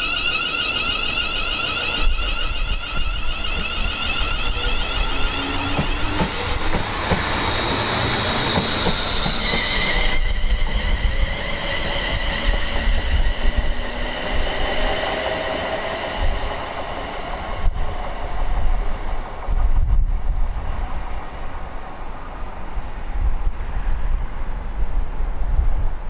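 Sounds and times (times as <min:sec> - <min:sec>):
high whining tones: 0:00.0 - 0:19.5
train wheels on rails: 0:00.0 - 0:26.0
wind buffeting the microphone: 0:01.2 - 0:26.0.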